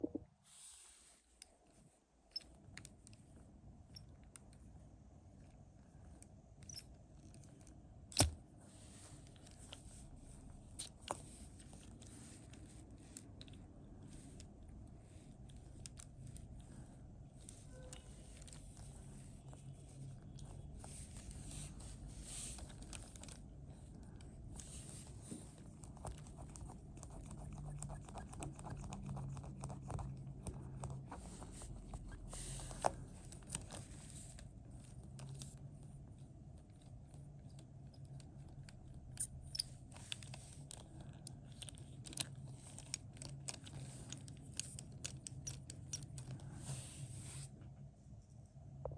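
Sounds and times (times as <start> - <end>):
plastic parts clicking and rattling: 36.7 - 46.6.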